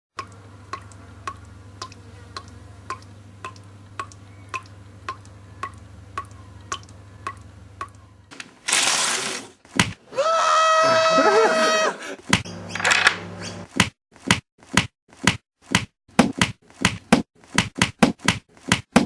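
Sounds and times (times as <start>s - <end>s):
sharp clicks: 0.2s - 8.0s
steady low hum: 0.2s - 8.3s.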